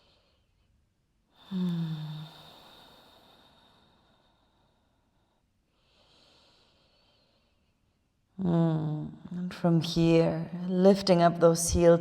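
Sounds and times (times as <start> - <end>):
woman sighing: 1.4 - 2.5.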